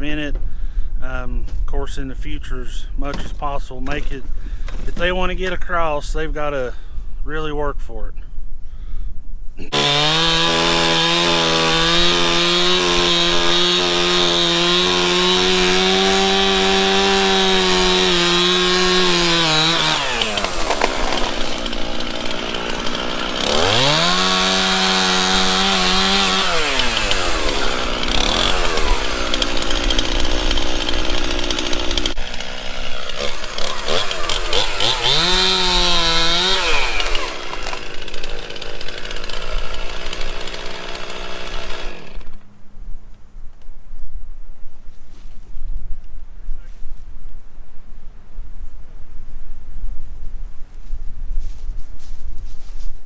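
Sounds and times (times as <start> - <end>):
chainsaw engine revving and idling: 9.6 - 42.4.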